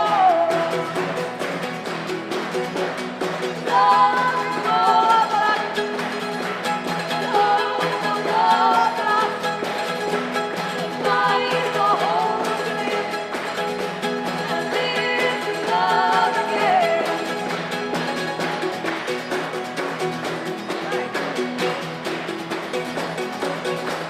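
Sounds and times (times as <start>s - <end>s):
person singing: 0.0s - 1.3s, 3.6s - 6.0s, 7.0s - 10.0s, 10.6s - 17.8s.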